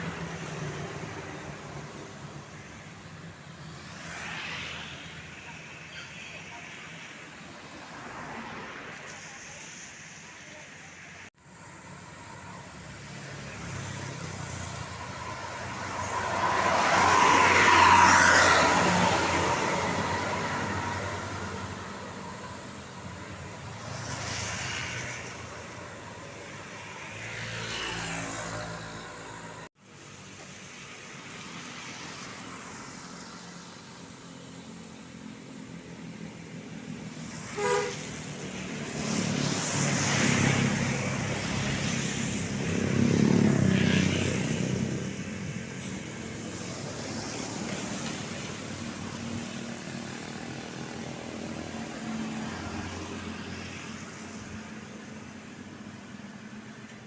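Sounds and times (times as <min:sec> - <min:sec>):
road traffic passing: 0:00.0 - 0:57.0
car horn toot: 0:37.6 - 0:38.0.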